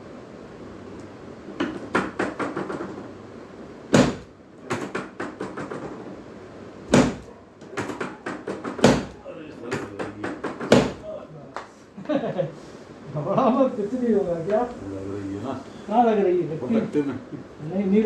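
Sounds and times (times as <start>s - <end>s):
knocks on treatment table: 1.6s - 3.0s, 3.9s - 6.0s, 6.9s - 11.0s
loud deep thumps: 6.9s - 7.3s.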